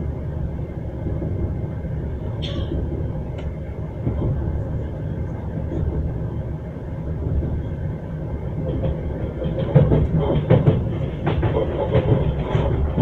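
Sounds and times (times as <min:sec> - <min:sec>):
train wheels rumbling on rails: 0:00.0 - 0:13.0
wheels clacking over rail joints: 0:08.5 - 0:13.0.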